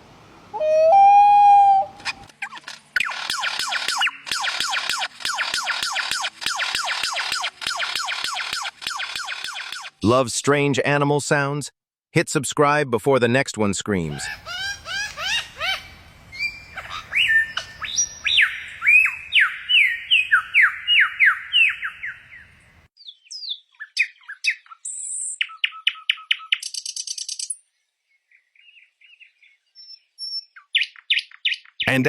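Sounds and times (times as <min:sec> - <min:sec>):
bird clicks and buzzes: 0:02.0 - 0:10.0
sharp whistled bird notes: 0:16.3 - 0:22.4.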